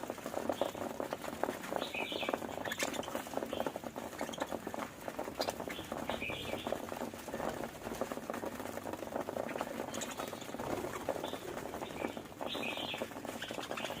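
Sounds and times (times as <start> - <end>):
budgerigars chattering and warbling: 1.8 - 4.6, 5.3 - 6.8, 9.5 - 14.0
high bird chirps: 5.4 - 6.8, 9.9 - 14.0.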